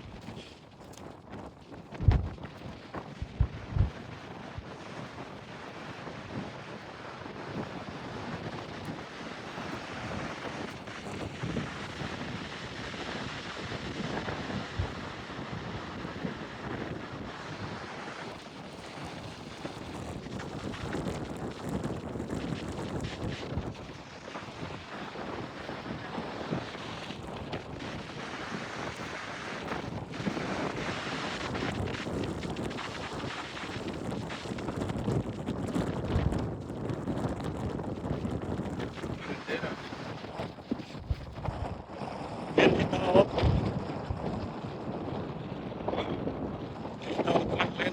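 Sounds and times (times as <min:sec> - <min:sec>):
wind buffeting microphone: 0:00.0 - 0:47.9
sea waves washing: 0:46.8 - 0:47.9.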